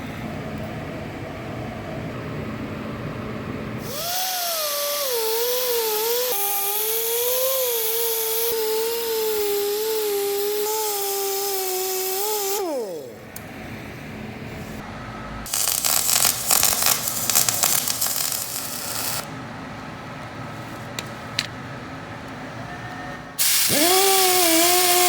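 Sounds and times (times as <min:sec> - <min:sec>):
low shop noise: 0:00.0 - 0:25.0
power grinder whining: 0:03.9 - 0:13.2, 0:23.7 - 0:25.0.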